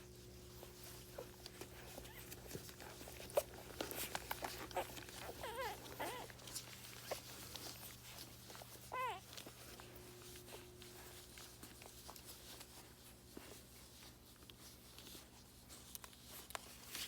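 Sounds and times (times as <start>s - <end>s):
puppies suckling: 0.1s - 17.0s
puppy squeaking: 3.2s - 8.2s, 8.8s - 9.4s.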